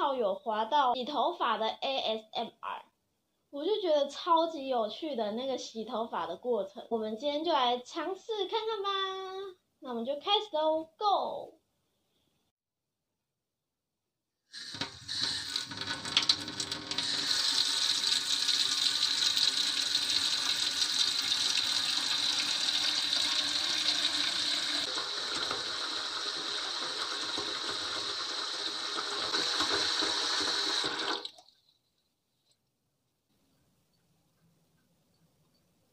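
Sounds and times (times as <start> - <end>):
running water rushing: 15.1 - 31.5.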